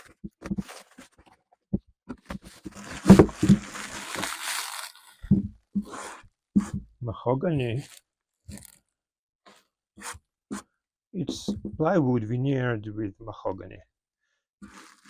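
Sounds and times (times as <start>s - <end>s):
paper rustling and crinkling: 0.0s - 1.5s, 2.1s - 6.2s, 7.8s - 8.8s, 14.6s - 15.0s.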